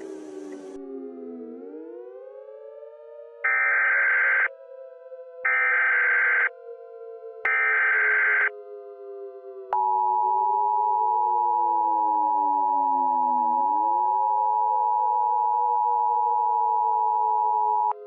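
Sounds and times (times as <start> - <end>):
low synthesized drone: 0.0 - 2.5.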